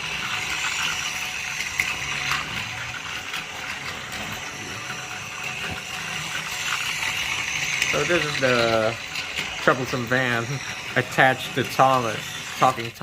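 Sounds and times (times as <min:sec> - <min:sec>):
toy train motor whirring: 0:00.0 - 0:13.0.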